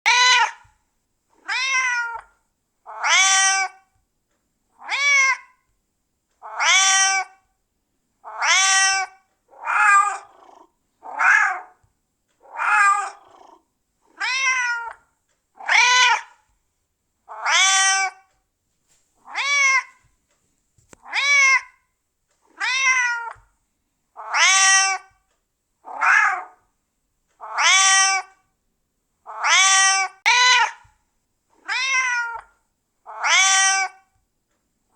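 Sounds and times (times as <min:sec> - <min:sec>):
cat meowing: 0:00.1 - 0:00.7, 0:01.4 - 0:02.3, 0:02.9 - 0:03.8, 0:04.8 - 0:05.6, 0:06.4 - 0:07.4, 0:08.2 - 0:15.0, 0:15.6 - 0:16.4, 0:17.3 - 0:18.3, 0:19.3 - 0:20.0, 0:21.0 - 0:21.8, 0:22.5 - 0:23.5, 0:24.2 - 0:25.2, 0:25.9 - 0:26.6, 0:27.4 - 0:28.4, 0:29.3 - 0:30.9, 0:31.6 - 0:34.1.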